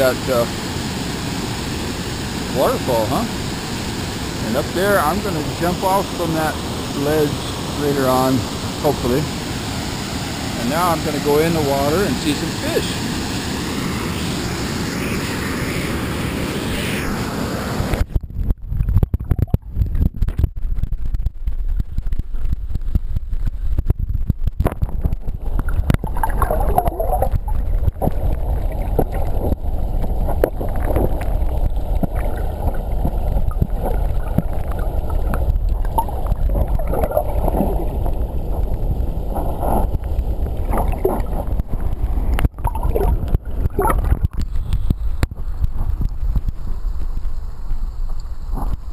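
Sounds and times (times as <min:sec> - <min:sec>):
underwater bubbling: 0:00.0 - 0:15.9, 0:17.8 - 0:48.9
rushing creek water: 0:00.0 - 0:18.1, 0:24.8 - 0:48.9
low underwater rumble: 0:18.1 - 0:48.9.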